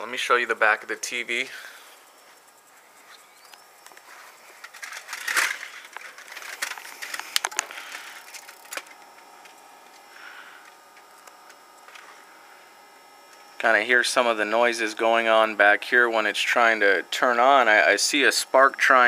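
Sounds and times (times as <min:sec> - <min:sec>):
faint electrical whine: 0:00.0 - 0:19.0.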